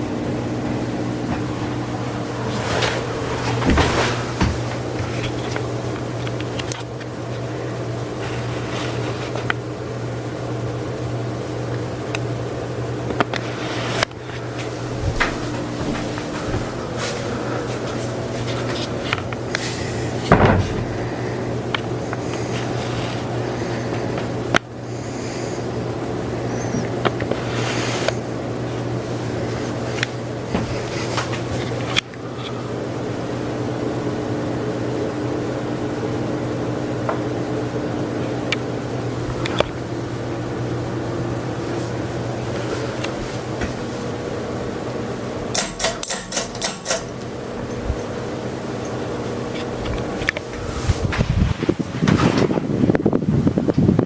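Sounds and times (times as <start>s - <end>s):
ceiling fan motor hum: 0.0s - 54.0s
rush of air from fan blades: 13.3s - 31.2s, 46.8s - 54.0s.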